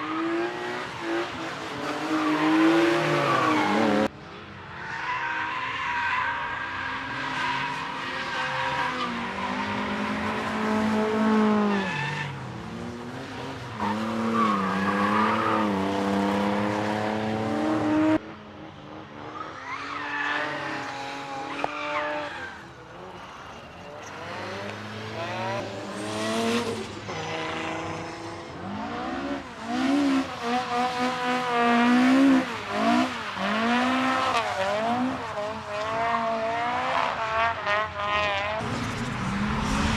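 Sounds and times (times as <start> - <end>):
car engines revving: 0.0 - 4.7, 5.4 - 39.9.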